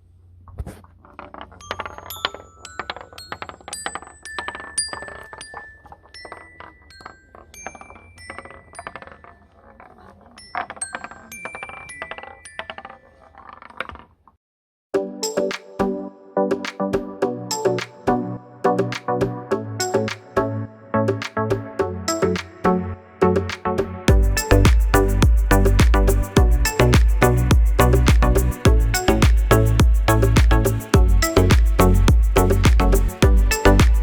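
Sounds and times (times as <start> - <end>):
marbles rolling on wooden track: 0.5 - 14.3, 24.3 - 34.0
chime bars ringing: 1.6 - 9.5
synthesizer music: 15.0 - 34.0.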